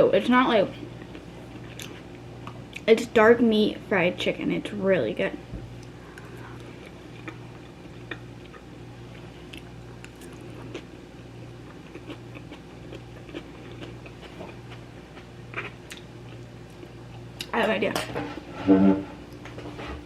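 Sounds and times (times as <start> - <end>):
low steady hum: 0.0 - 20.0
person chewing crunchy food: 0.8 - 2.9, 5.8 - 17.5.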